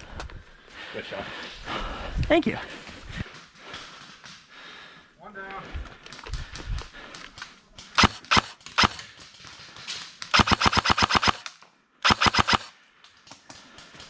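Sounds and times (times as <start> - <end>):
airsoft rifle firing: 8.0 - 9.1, 10.3 - 12.8.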